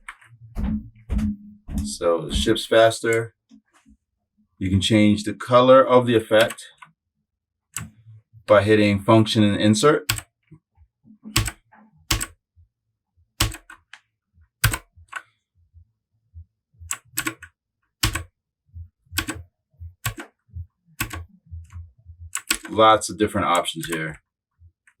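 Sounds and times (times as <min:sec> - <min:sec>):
mechanical keyboard key clicks: 0:11.4 - 0:12.3, 0:13.4 - 0:13.8, 0:16.9 - 0:18.2, 0:21.0 - 0:21.3.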